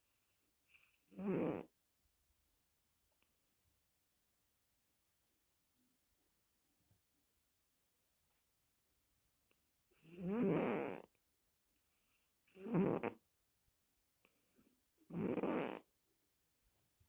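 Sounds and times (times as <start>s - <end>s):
pet snoring: 0.8s - 1.7s, 10.0s - 11.1s, 12.5s - 13.2s, 15.1s - 15.9s
quiet breaths: 11.8s - 12.7s.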